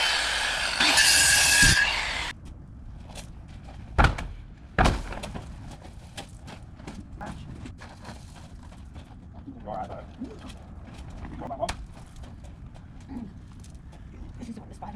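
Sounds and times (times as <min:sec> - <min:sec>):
loud rasping noise with whine: 0:00.0 - 0:02.3.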